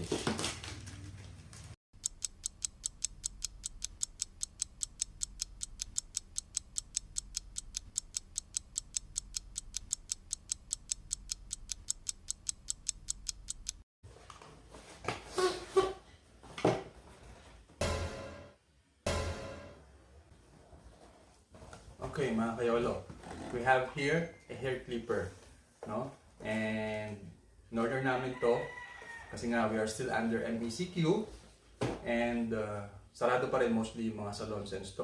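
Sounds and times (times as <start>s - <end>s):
clock ticking: 2.0s - 13.8s.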